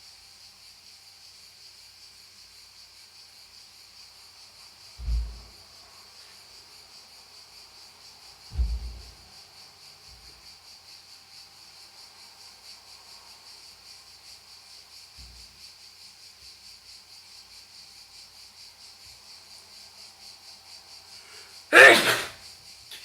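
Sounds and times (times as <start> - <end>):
soft low thump: 5.0 - 5.6, 8.5 - 9.2.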